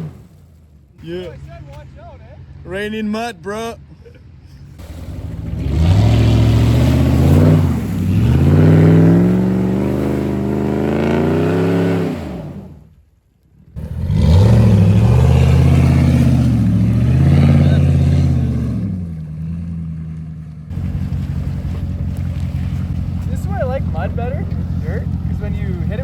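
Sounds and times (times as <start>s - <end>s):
truck engine revving: 0.0s - 12.9s, 13.7s - 26.0s.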